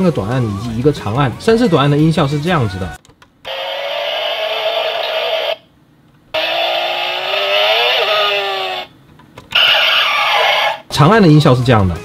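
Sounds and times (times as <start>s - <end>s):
toy car electronic sound effects: 3.5s - 5.6s, 6.4s - 8.9s, 9.6s - 10.8s.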